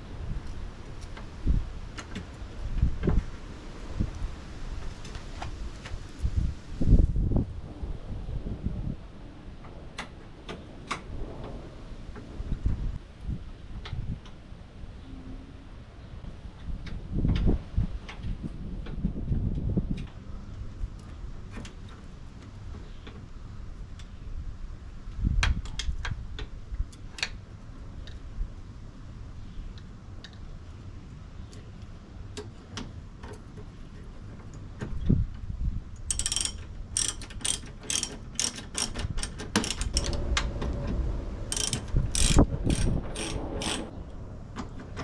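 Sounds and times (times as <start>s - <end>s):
ratchet wrench clicking: 36.1s - 40.2s, 41.5s - 43.9s.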